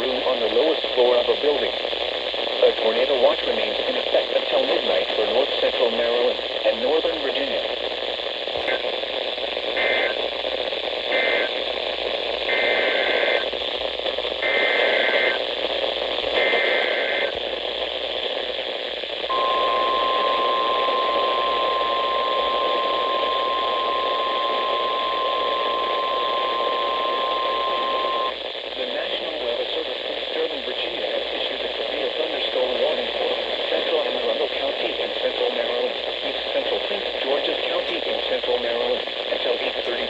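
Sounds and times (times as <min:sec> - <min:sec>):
reception static: 0:00.0 - 0:40.0
steady warning alarm tone: 0:19.3 - 0:28.4.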